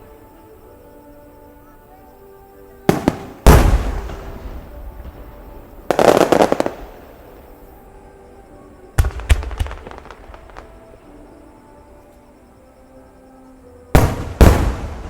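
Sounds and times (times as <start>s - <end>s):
faint music: 0.0s - 15.0s
fireworks bursting: 2.8s - 8.0s, 8.7s - 11.4s, 13.9s - 15.0s.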